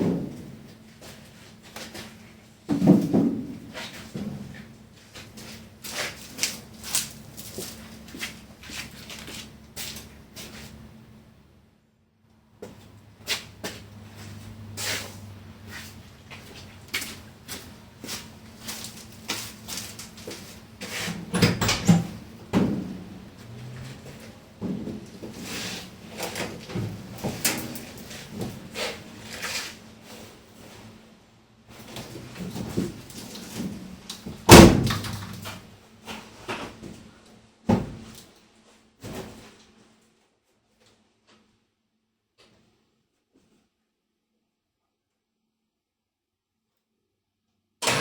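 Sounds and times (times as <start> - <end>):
objects clunking and knocking: 0.0 - 0.8, 1.7 - 7.6, 18.8 - 29.6, 31.8 - 37.1.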